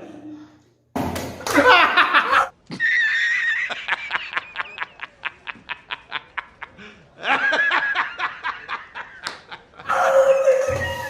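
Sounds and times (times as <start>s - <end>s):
person laughing: 1.5s - 11.0s
high voiced cry: 9.9s - 11.0s.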